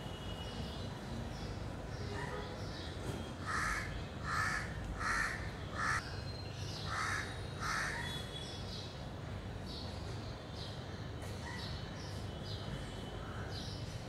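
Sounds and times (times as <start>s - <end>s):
large bird harsh calls: 3.4s - 6.1s, 6.7s - 8.4s.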